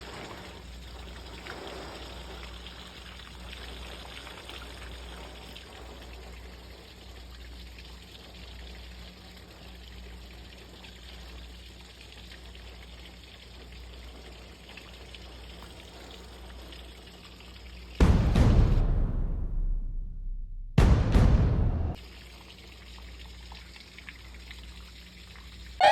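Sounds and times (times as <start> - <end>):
rain falling: 0.0 - 7.0
runoff water pouring and trickling: 0.0 - 18.1, 22.0 - 25.9.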